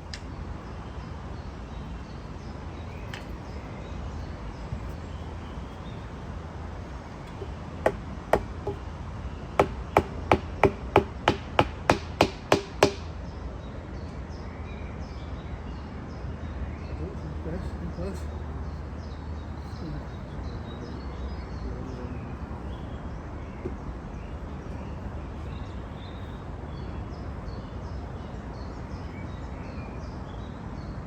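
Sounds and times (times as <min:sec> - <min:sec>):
stake being hammered: 0:07.4 - 0:08.8, 0:09.6 - 0:13.1.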